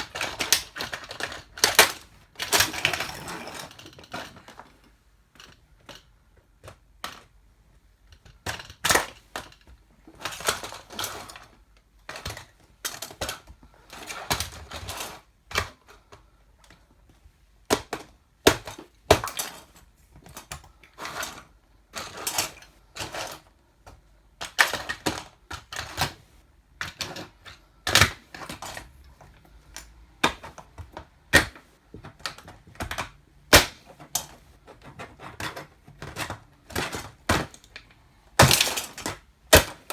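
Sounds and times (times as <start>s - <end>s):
toy car cracking and crunching: 0.0s - 4.8s, 24.4s - 26.2s, 26.8s - 39.9s.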